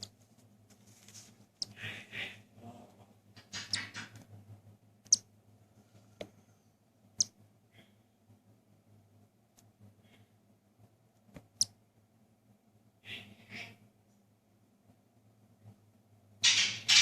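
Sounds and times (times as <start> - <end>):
faint steady hum: 4.1 - 16.5.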